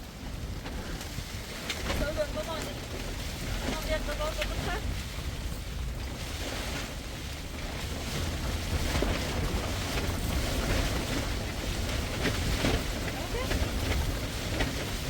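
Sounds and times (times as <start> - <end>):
wind gusting against microphone: 0.0 - 15.0.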